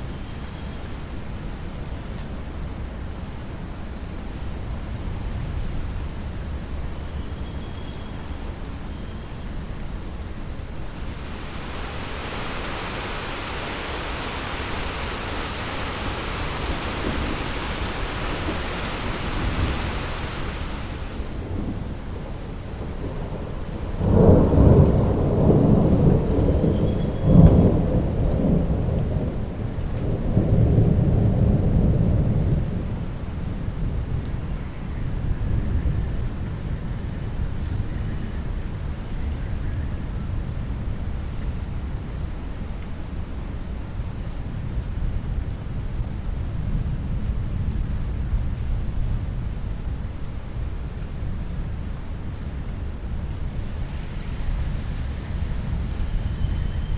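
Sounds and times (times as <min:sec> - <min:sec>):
steady rain: 0:00.0 - 0:56.9
thunder rumbling: 0:10.8 - 0:29.3
sharp thunder crack: 0:11.0 - 0:21.8.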